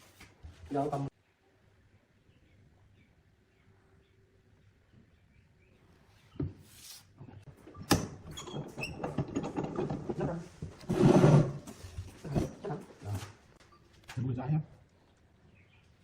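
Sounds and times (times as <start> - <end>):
rubbing or sliding noise: 10.0 - 12.4.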